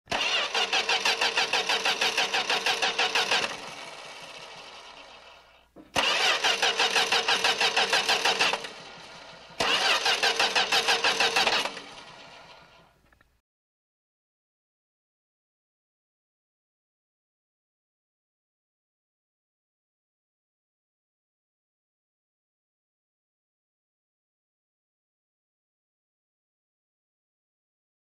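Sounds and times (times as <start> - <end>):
starter motor cranking engine: 0.1 - 13.1
starter click: 5.8 - 8.8, 9.6 - 11.9.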